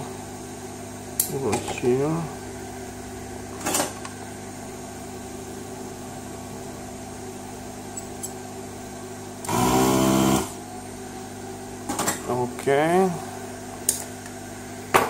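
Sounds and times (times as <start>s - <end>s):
electrical hum: 0.0s - 14.9s
desoldering pump motor buzz: 9.4s - 10.7s.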